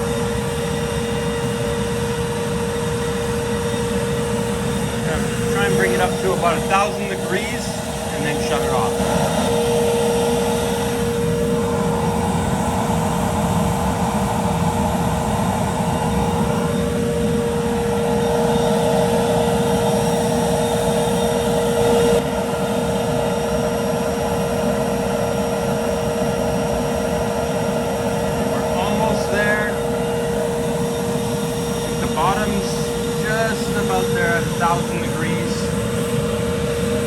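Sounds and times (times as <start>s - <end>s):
exhaust vacuum running: 0.0s - 37.0s
gas burner rushing: 0.0s - 37.0s
steady tone: 3.8s - 22.2s, 28.2s - 37.0s.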